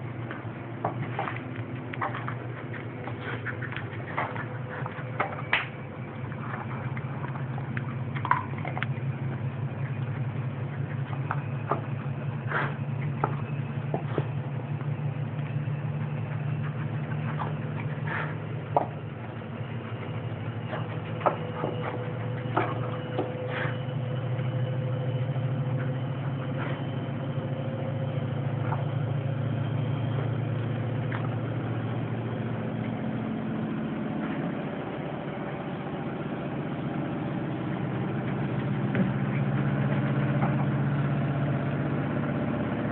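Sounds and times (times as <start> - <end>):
motor humming: 0.0 - 42.9.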